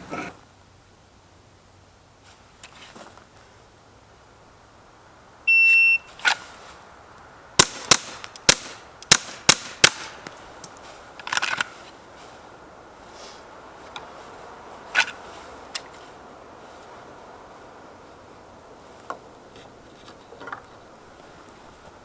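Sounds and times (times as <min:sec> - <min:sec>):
shot timer beep: 0:05.5 - 0:06.1
pistol shots: 0:07.6 - 0:10.2.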